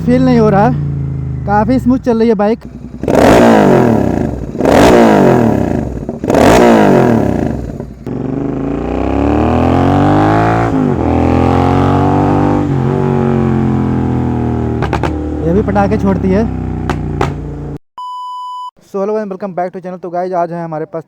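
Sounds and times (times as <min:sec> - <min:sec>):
motorcycle accelerating and upshifting: 0:00.0 - 0:17.8
motorcycle throttle blips: 0:02.6 - 0:17.8.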